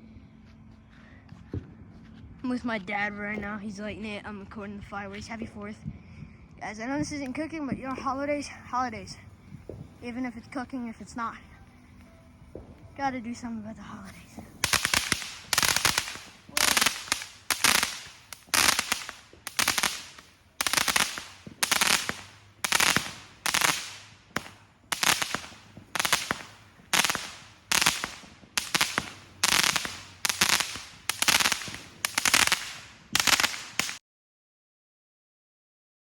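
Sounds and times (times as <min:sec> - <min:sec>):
firework cake bangs: 0:14.0 - 0:34.0.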